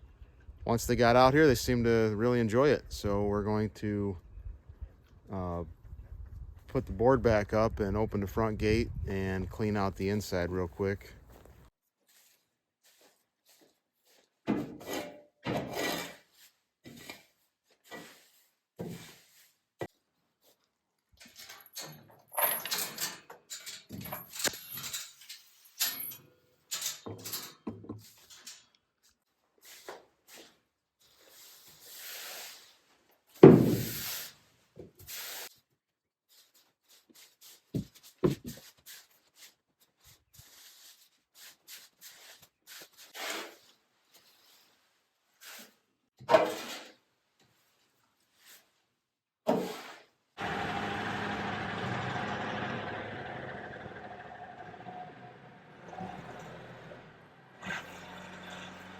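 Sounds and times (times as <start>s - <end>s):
wooden board and gate clattering: 14.5s - 16.2s, 21.2s - 28.6s, 33.4s - 34.0s, 46.2s - 47.0s.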